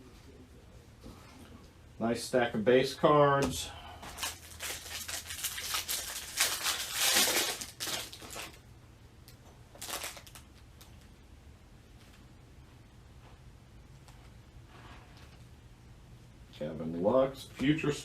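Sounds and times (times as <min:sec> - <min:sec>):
foil wrapper crinkling and tearing: 0:04.1 - 0:08.6, 0:09.7 - 0:10.6.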